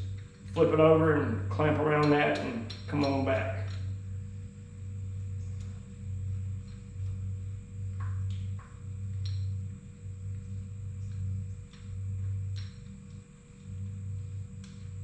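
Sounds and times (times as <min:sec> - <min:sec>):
low pulsing hum: 0:00.0 - 0:15.0
metallic clinks and taps: 0:02.0 - 0:03.9.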